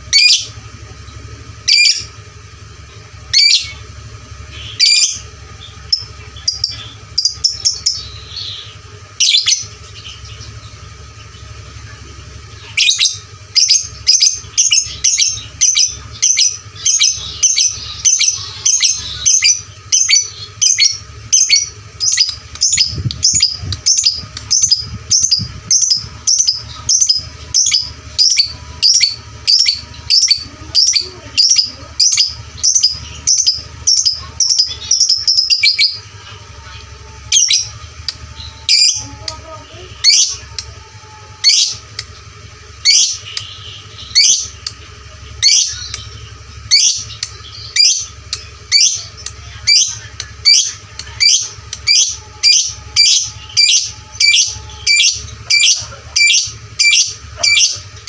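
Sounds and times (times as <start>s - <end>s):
lovebird shrill calls: 46.7s - 57.8s.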